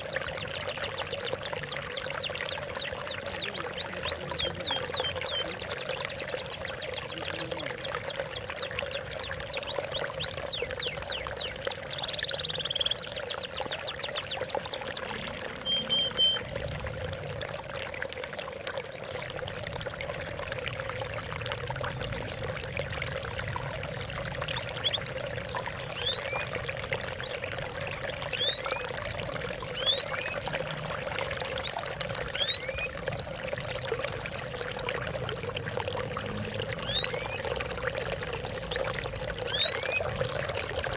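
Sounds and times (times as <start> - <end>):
songbird singing: 0.0 - 16.7, 23.3 - 26.6, 27.2 - 30.6, 31.5 - 33.0, 36.0 - 40.3
water trickling and splashing: 0.0 - 40.9.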